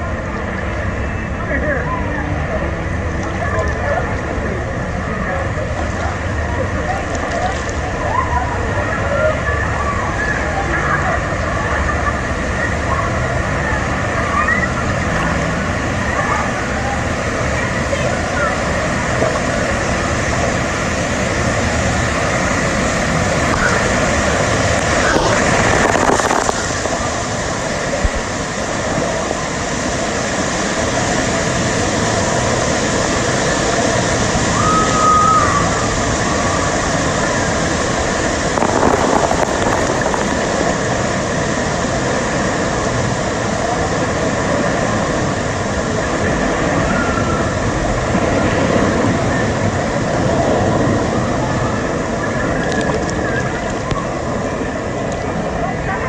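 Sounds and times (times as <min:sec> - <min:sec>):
rushing churning water: 0:00.0 - 0:56.0
wind noise on microphone: 0:20.4 - 0:31.4, 0:35.6 - 0:56.0.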